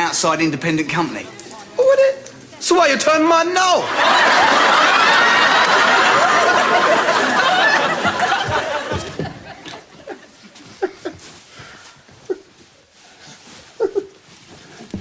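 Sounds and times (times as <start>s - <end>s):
audience laughter: 3.8s - 10.3s
short chuckles: 13.8s - 14.2s.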